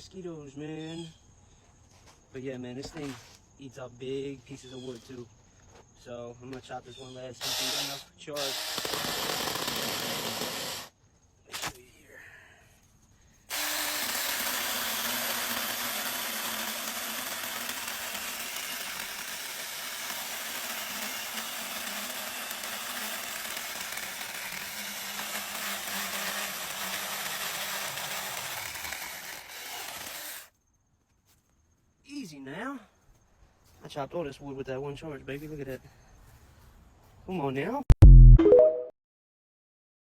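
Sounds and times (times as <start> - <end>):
chain rasping through wood: 13.5 - 30.5.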